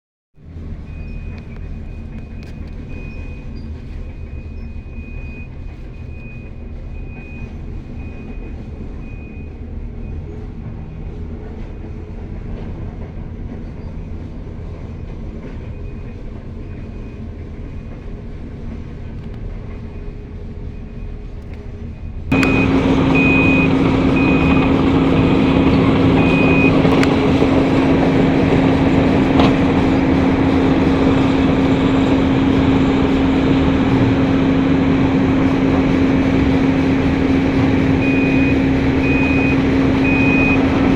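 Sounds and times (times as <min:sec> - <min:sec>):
excavator diesel engine running: 0:00.4 - 0:40.9
travel alarm beeping: 0:22.3 - 0:40.9.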